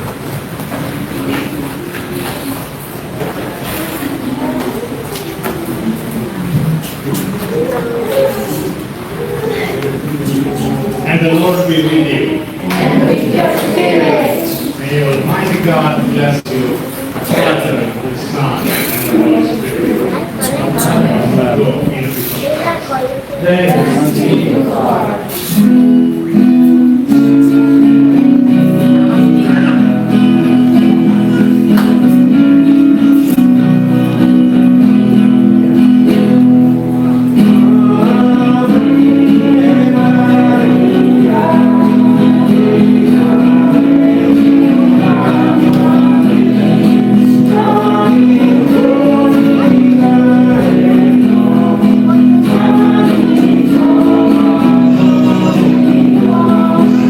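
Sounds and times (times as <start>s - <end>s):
voices singing a hymn: 7.3s - 22.4s, 23.4s - 57.0s.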